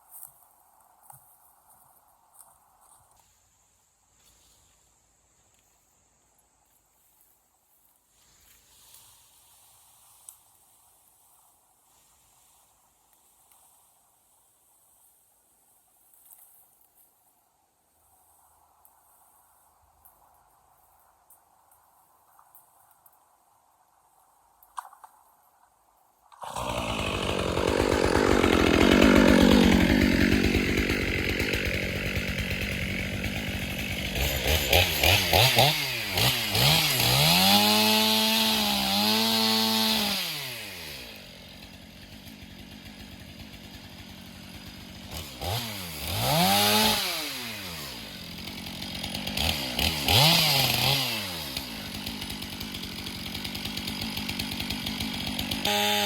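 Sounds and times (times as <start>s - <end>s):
pole saw cutting branches: 26.4s - 56.0s.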